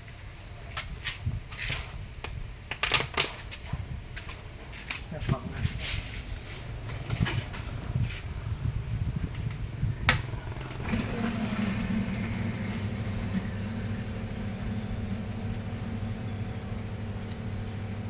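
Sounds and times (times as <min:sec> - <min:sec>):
motor humming: 0:06.6 - 0:18.0.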